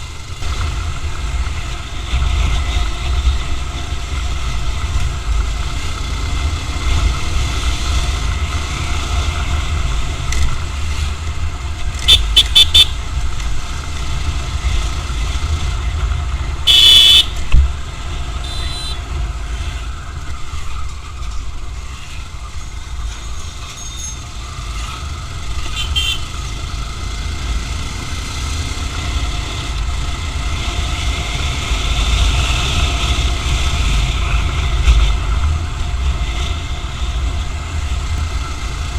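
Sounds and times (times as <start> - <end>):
road traffic rumble: 0.0 - 38.9
vehicle horns honking: 12.0 - 13.0, 16.7 - 17.4, 18.4 - 19.0, 25.7 - 26.3.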